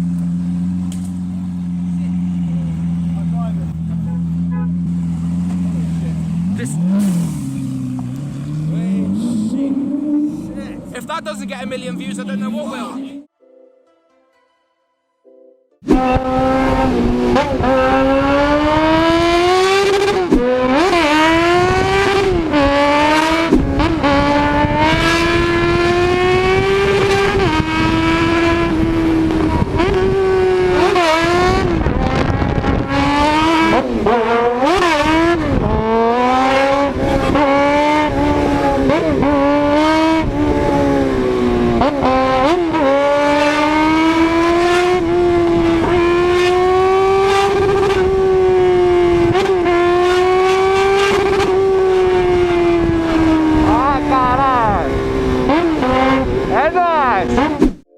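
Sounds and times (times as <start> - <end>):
engine revving at high revs: 15.9 - 57.6.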